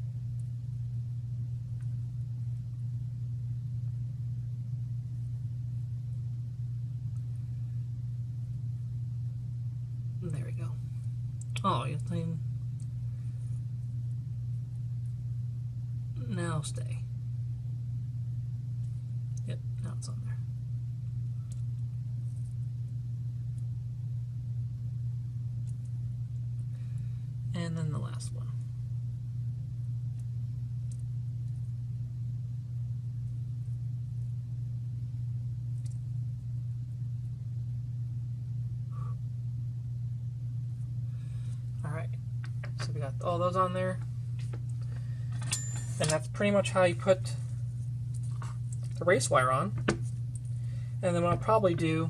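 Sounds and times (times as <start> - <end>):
low hum: 0.0 - 52.0
faint small clicks: 35.8 - 36.1.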